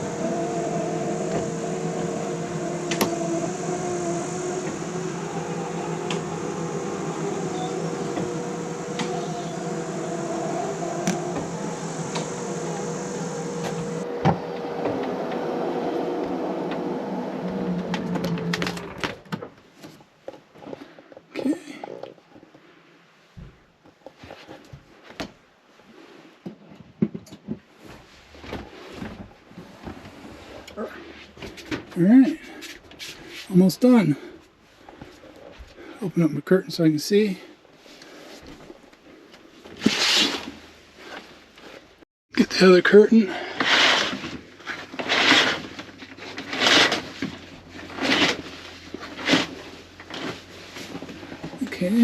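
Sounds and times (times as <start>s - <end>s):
curtain swishing along track: 0.0s - 19.2s, 39.8s - 41.1s, 43.5s - 51.4s
low steady hum: 0.0s - 19.3s.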